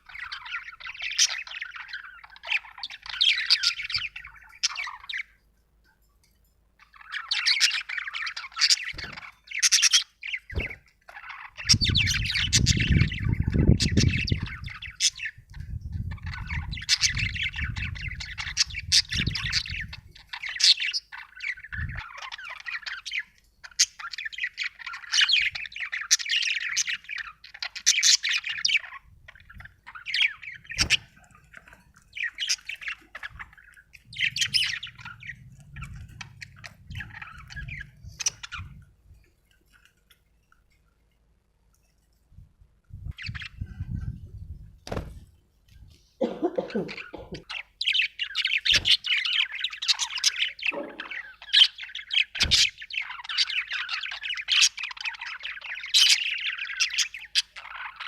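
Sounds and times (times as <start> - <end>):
budgerigar chirping and chattering: 0.0 - 5.3, 6.8 - 38.8, 46.3 - 58.0.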